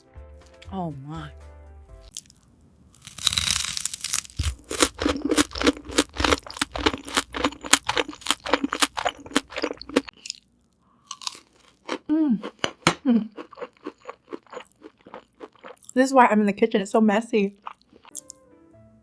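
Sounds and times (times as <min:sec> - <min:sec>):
crunchy chewing of fried chicken: 0:02.1 - 0:16.0, 0:17.5 - 0:18.3.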